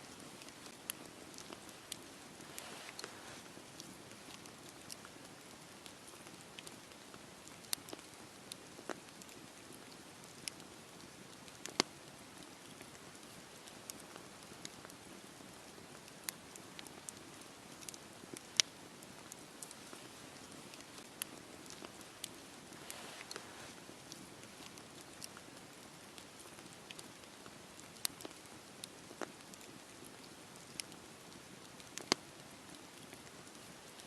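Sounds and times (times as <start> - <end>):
wood crackling and popping: 0.0 - 34.0
fire hissing: 0.2 - 5.6, 19.6 - 25.2.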